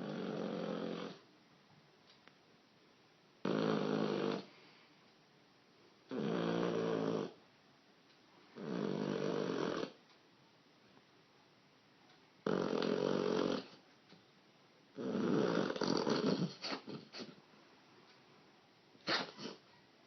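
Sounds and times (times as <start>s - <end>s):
dog snoring: 0.0s - 1.2s, 3.4s - 4.5s, 6.0s - 7.4s, 8.5s - 10.0s, 12.4s - 13.8s, 14.9s - 17.4s.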